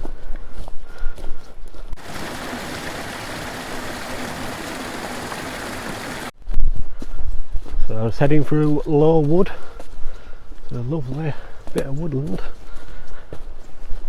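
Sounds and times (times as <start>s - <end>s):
footsteps on a trail: 0.0s - 14.0s
stream water rushing: 2.0s - 6.3s.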